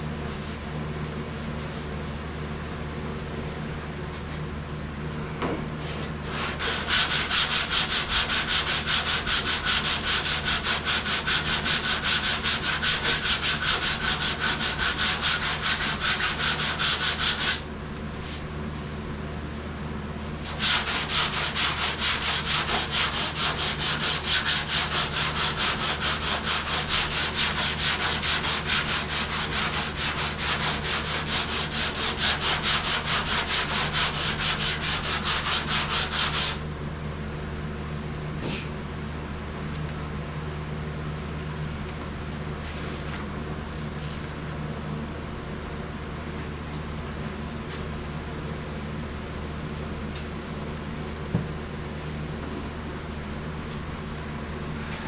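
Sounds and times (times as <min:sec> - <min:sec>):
sandpaper sanding car panel: 0:06.3 - 0:17.6, 0:20.4 - 0:36.6.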